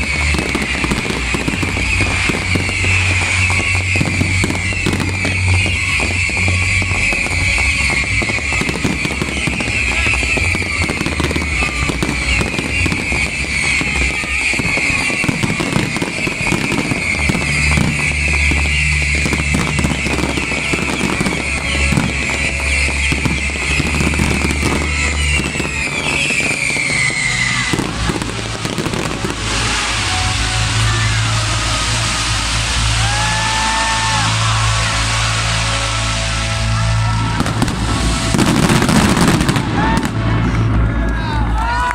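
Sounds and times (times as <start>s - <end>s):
music with steady bass line: 0.0s - 26.8s
fireworks crackling and bursting: 0.0s - 41.9s.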